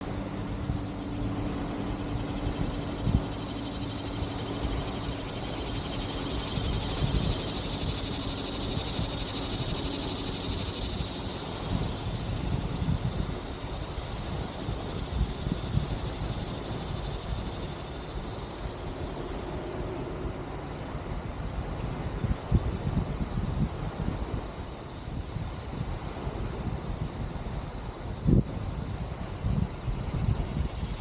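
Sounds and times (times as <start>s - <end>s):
low engine hum: 0.0s - 24.6s
high hissing buzz: 0.0s - 31.0s
wind rumbling on microphone: 0.0s - 31.0s.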